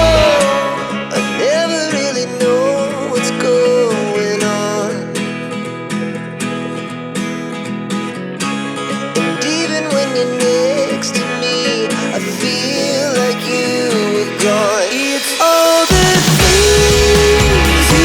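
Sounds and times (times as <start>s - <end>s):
acoustic guitar: 0.0s - 18.0s
sliding melody line: 14.6s - 18.0s.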